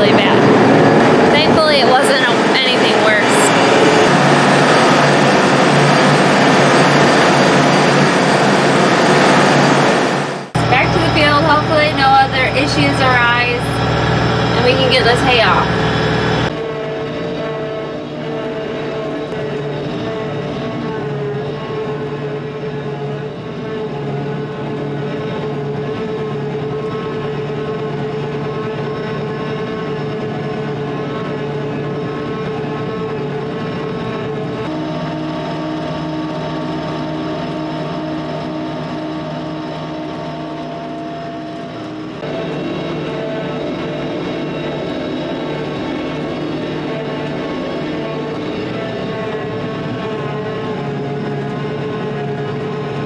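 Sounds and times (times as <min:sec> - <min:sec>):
vehicle engine running: 0:00.0 - 0:53.0.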